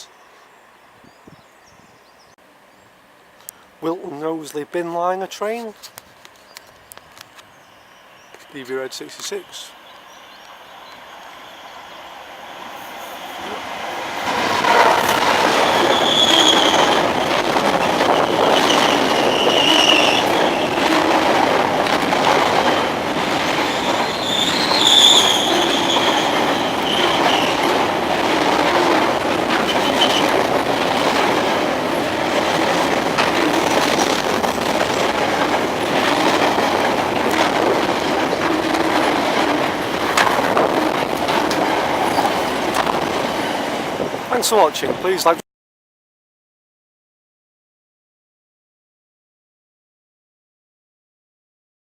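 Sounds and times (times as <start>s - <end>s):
freight wagons rumbling past: 11.5s - 45.2s
high wheel squeals: 14.8s - 17.1s, 17.9s - 20.9s, 23.6s - 27.8s.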